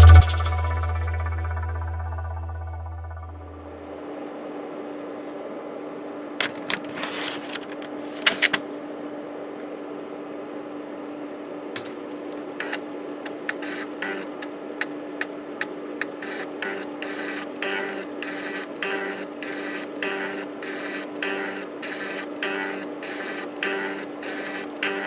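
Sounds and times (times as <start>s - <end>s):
disk drive motor hum: 11.8s - 25.0s.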